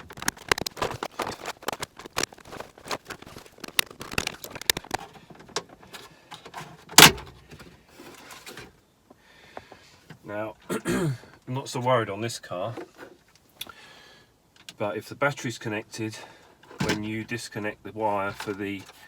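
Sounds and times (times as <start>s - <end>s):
plastic trim clicking and creaking: 0.0s - 7.4s.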